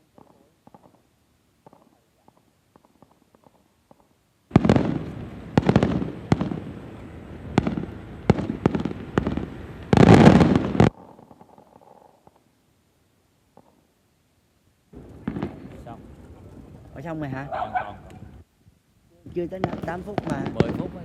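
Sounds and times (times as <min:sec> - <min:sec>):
fireworks bangs and crackle: 0:00.0 - 0:12.4, 0:14.9 - 0:17.4, 0:19.2 - 0:21.0.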